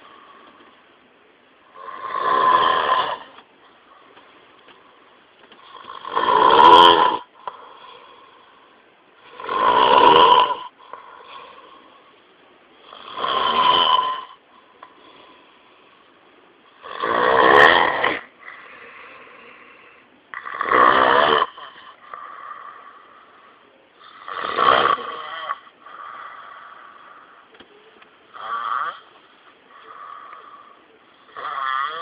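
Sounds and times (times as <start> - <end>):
faint breathing: 0.0 - 1.0, 3.3 - 6.1, 7.3 - 9.4, 10.7 - 13.0, 14.3 - 16.8, 18.2 - 20.3, 21.5 - 24.4, 25.3 - 32.0
loud snoring: 1.7 - 3.4, 5.6 - 8.1, 9.2 - 11.7, 12.8 - 14.4, 16.8 - 19.6, 20.3 - 23.1, 24.0 - 27.3, 28.3 - 29.1, 29.7 - 32.0.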